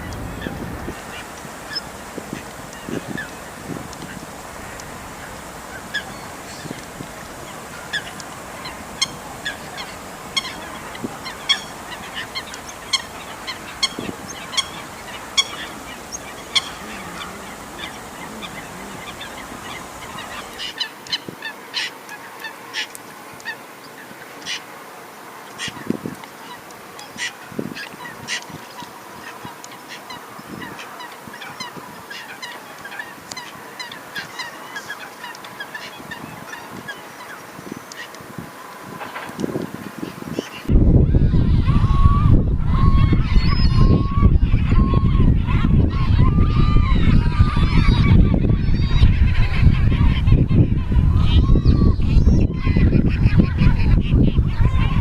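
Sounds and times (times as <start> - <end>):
low background rumble: 0.0 - 20.6
gulls calling: 0.0 - 23.6, 26.5 - 55.0
steady background hiss: 0.0 - 55.0.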